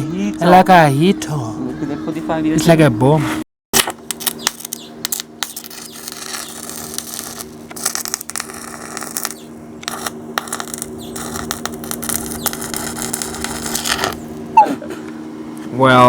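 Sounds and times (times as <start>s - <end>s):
welding arc crackling: 3.8s - 14.6s
welder hum: 3.8s - 16.0s.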